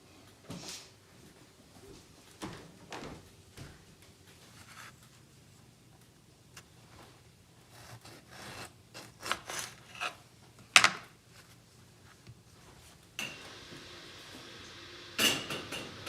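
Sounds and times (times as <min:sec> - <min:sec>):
rubbing and scraping handling noise: 0:04.4 - 0:05.3, 0:06.6 - 0:10.2, 0:11.2 - 0:13.0
steady hiss: 0:13.2 - 0:16.0.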